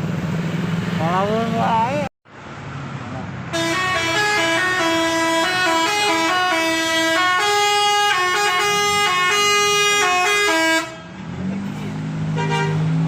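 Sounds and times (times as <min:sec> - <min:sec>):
multi-tone bus horn melody: 0:03.5 - 0:11.3, 0:12.3 - 0:13.0.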